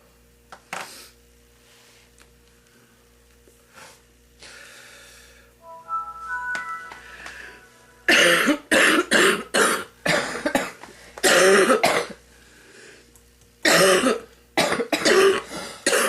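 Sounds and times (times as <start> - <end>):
short high tones: 5.6 - 8.8
woman coughing harshly: 8.1 - 12.2, 13.6 - 16.0.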